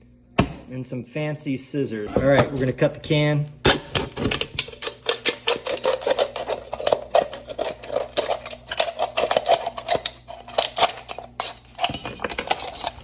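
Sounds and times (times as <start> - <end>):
scissors cutting metal can: 4.2 - 13.0.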